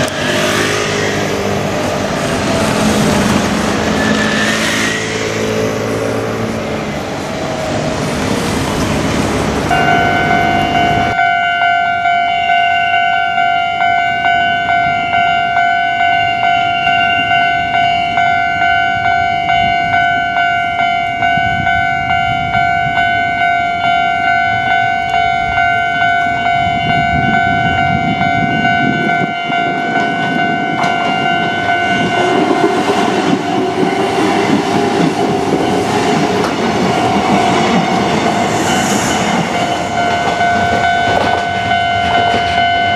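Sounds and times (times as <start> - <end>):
road vehicle passing: 0.0 - 11.2
electric train rumble: 0.0 - 42.9
level-crossing warning bell ringing: 0.0 - 42.9
train wheel clatter: 30.0 - 42.9.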